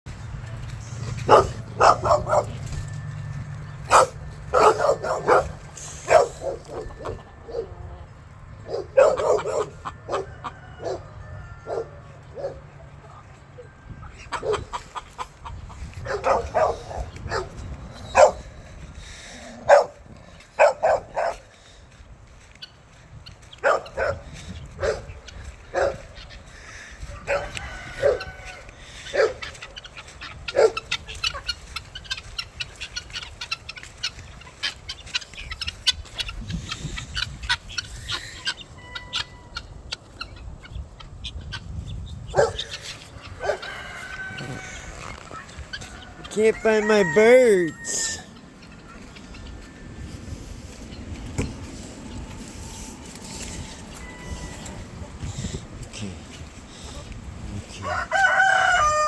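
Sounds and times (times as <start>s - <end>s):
chickens clucking: 0.1s - 59.0s
dogs barking: 0.8s - 3.0s, 3.6s - 12.9s, 14.2s - 21.8s, 23.4s - 36.4s, 42.2s - 49.3s.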